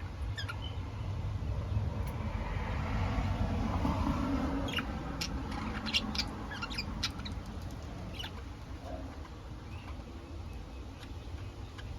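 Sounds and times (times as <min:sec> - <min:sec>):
budgerigars chirping: 0:00.0 - 0:01.1, 0:04.5 - 0:11.9
low steady hum: 0:00.0 - 0:11.9.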